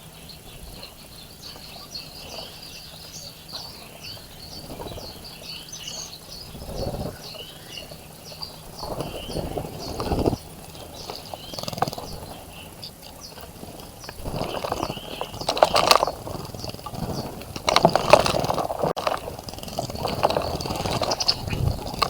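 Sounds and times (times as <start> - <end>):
small birds chirping: 0.0 - 22.0
bird splashing in birdbath: 8.6 - 22.0.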